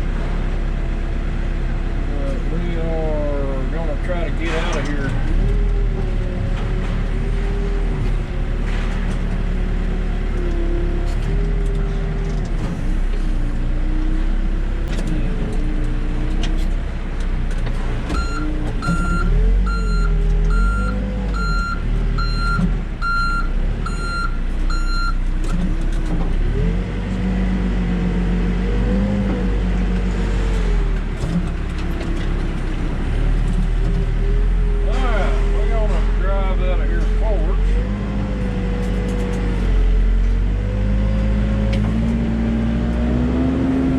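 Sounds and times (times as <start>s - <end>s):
diesel engine running: 0.0s - 43.9s
reversing alarm beeping: 18.2s - 25.2s.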